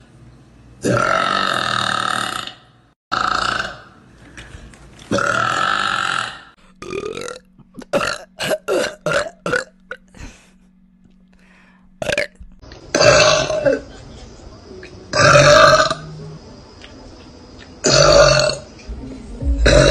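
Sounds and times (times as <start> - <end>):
girls belching loudly: 12.9 - 13.8, 15.1 - 16.0, 17.8 - 18.6.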